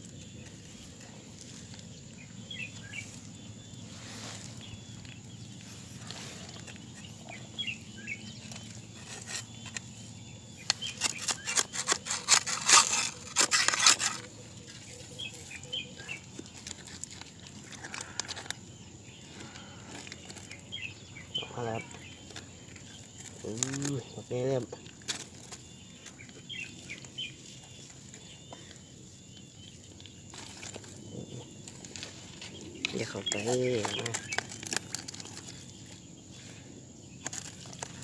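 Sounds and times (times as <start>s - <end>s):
birds chirping: 0.0s - 38.0s
close-up crackling and clicking: 10.6s - 14.8s, 16.0s - 18.6s, 21.6s - 36.0s.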